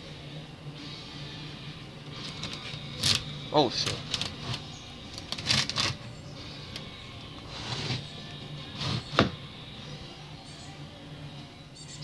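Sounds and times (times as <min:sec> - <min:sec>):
steady low hum: 0:00.0 - 0:12.0
objects scraping and rattling: 0:02.1 - 0:06.1, 0:06.7 - 0:09.4.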